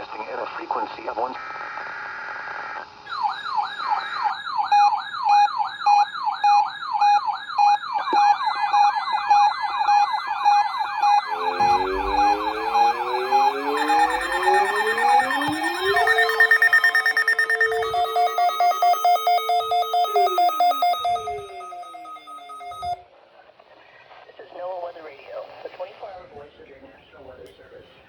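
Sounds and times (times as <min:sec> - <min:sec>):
electronic siren yelping: 0:03.1 - 0:23.0
siren tones rising in pitch: 0:08.1 - 0:23.0
pulsing beep: 0:09.8 - 0:23.0.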